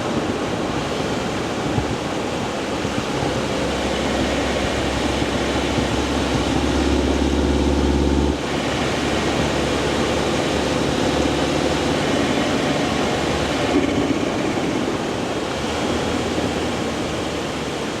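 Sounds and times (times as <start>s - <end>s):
car engine droning: 3.3s - 13.8s.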